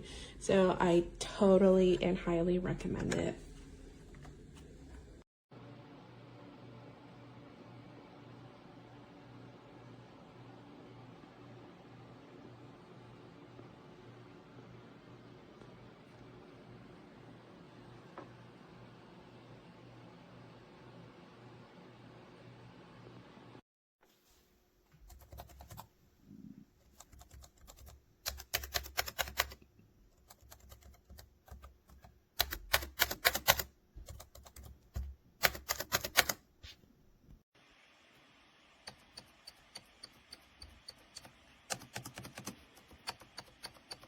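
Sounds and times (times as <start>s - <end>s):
keyboard typing clicks: 30.3s - 36.4s, 38.9s - 44.0s.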